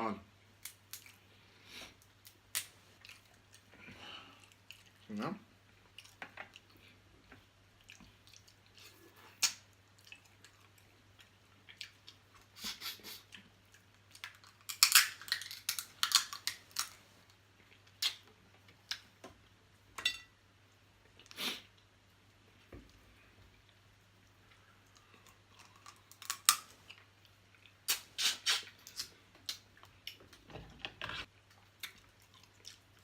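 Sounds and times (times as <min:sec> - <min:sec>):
person chewing: 0:07.8 - 0:17.0, 0:24.4 - 0:30.2, 0:31.3 - 0:33.0.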